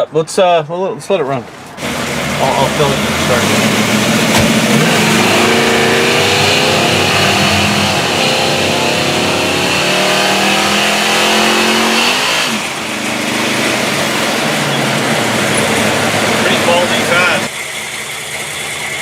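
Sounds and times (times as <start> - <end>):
car engine fast idle: 12.6 - 19.0.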